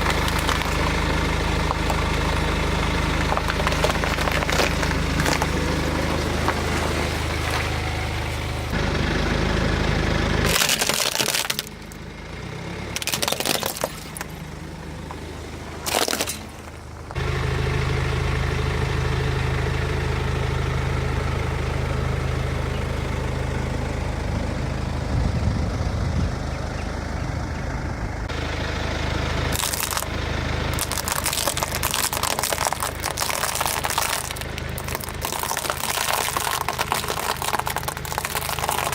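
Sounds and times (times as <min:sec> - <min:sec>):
tyres crunching apples and nuts: 0:00.0 - 0:08.9, 0:10.2 - 0:12.1, 0:12.9 - 0:17.3, 0:29.5 - 0:38.9
car engine running: 0:00.0 - 0:38.9.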